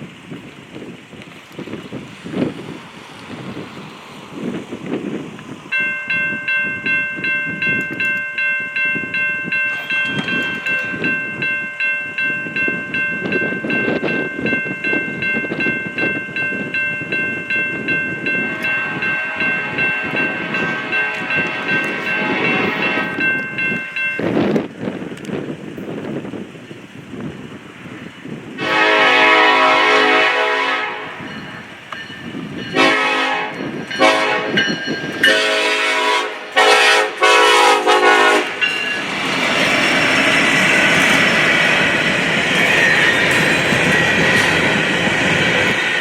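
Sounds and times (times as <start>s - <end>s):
train rumbling: 0.0s - 46.0s
crossing warning bell ringing: 5.7s - 24.8s, 28.6s - 46.0s
locomotive air horn: 18.5s - 23.2s, 28.6s - 31.3s, 32.7s - 38.6s.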